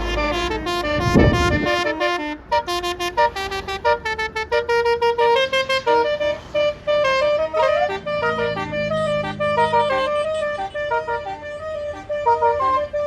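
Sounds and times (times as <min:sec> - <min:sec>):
multi-tone bus horn melody: 0:00.0 - 0:13.0.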